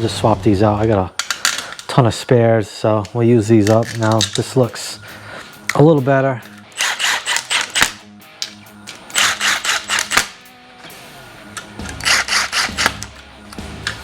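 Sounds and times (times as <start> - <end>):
background music: 0.0 - 14.0
ratchet wrench clicking: 6.5 - 10.3, 11.6 - 13.1.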